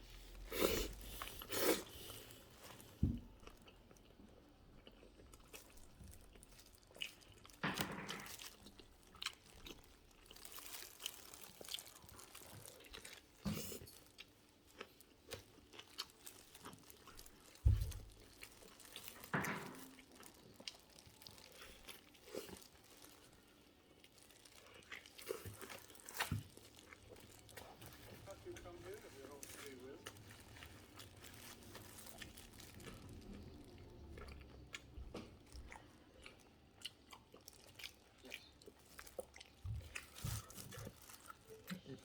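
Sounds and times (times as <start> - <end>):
chewing and biting food: 0.0 - 42.0.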